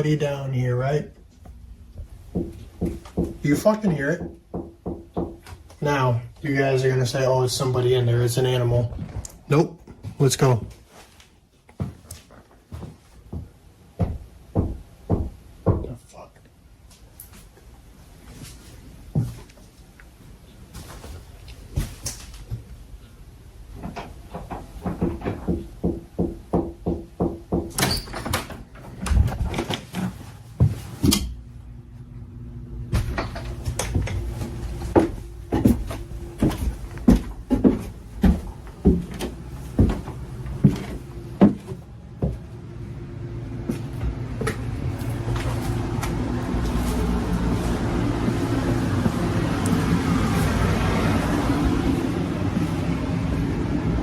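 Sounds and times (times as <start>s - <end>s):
footsteps on stairs: 1.4s - 5.7s, 11.8s - 15.9s, 19.1s - 19.6s, 33.0s - 42.6s, 43.6s - 52.8s
door sounds: 27.5s - 30.2s.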